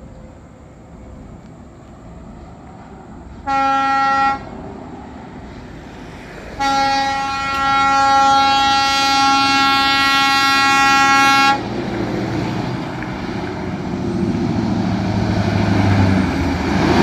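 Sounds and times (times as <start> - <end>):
truck engine and tyres rumbling: 0.0 - 17.0
truck air horn: 3.4 - 4.5, 6.6 - 11.8.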